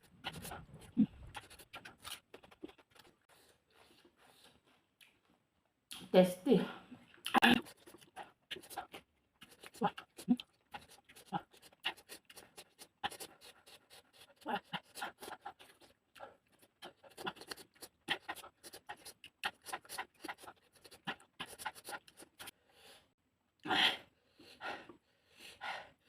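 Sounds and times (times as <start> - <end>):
person chewing and lip smacking: 0.0 - 4.2, 7.1 - 22.5.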